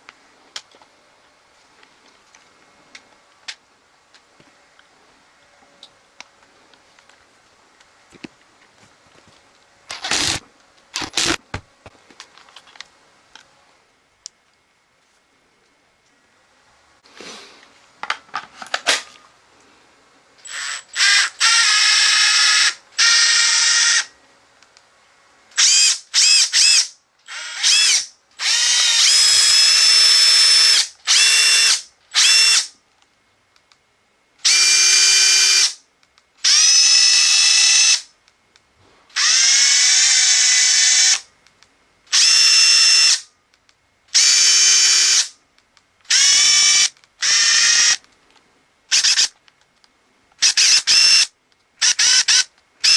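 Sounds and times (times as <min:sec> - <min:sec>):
impact driver motor whine: 0:09.9 - 0:11.9, 0:46.4 - 0:48.0, 0:48.9 - 0:49.3, 0:50.4 - 0:52.9.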